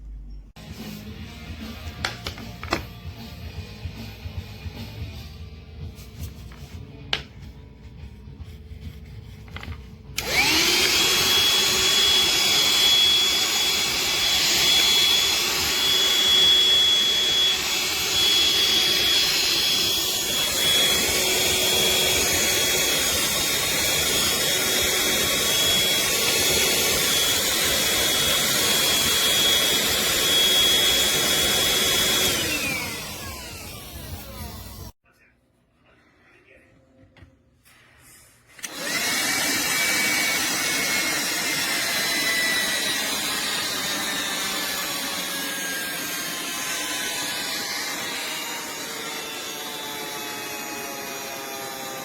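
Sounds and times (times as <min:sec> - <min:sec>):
handheld vacuum whine: 0:09.6 - 0:35.0, 0:38.6 - 0:52.0.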